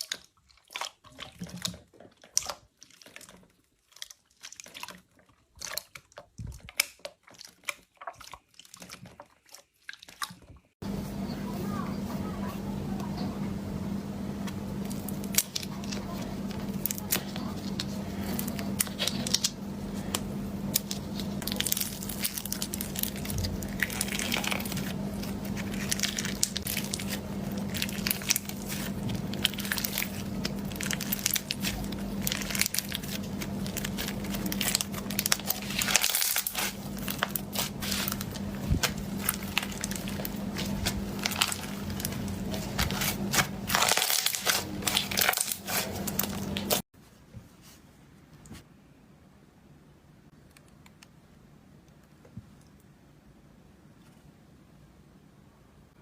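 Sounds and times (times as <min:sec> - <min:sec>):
slime crackling when squeezed: 0:20.7 - 0:46.8.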